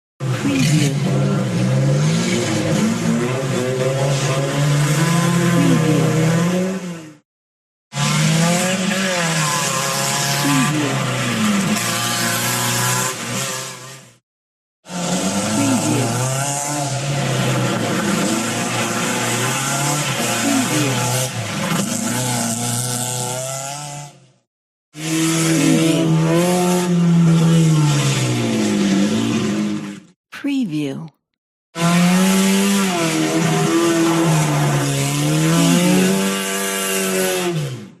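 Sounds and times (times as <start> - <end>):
car engine revving: 0.3 - 7.2, 14.9 - 24.0, 25.0 - 30.0, 31.8 - 37.8.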